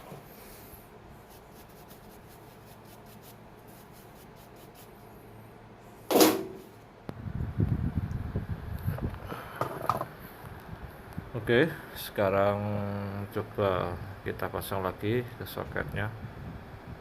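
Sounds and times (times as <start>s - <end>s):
light scratchy rubbing: 1.2s - 5.1s.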